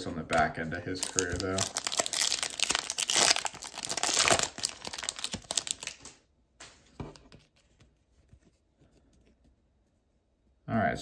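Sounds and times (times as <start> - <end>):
plastic wrapper crinkling and tearing: 0.9 - 6.2.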